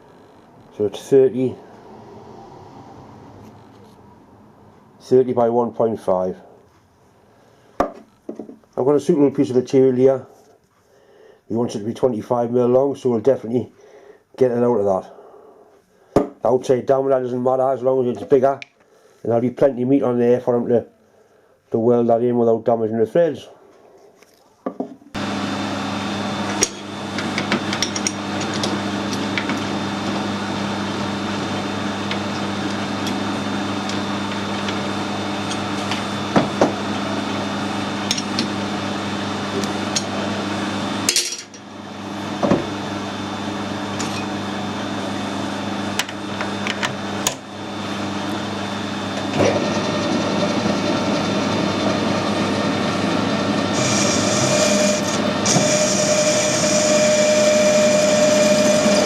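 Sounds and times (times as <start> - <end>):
machine tool cutting steel: 53.7 - 59.0.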